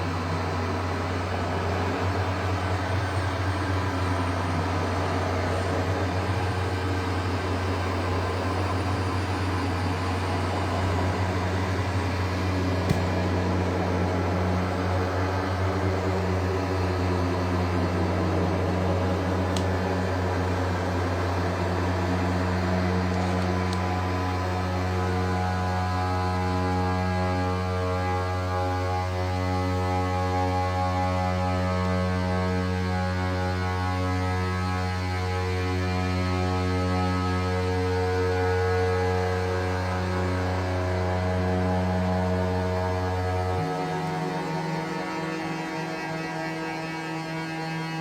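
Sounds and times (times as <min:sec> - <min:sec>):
synthesizer drone: 0:00.0 - 0:48.0.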